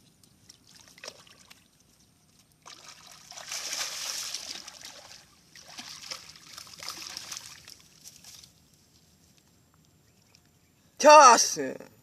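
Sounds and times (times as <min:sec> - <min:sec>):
water splashing and trickling: 0:00.0 - 0:09.1.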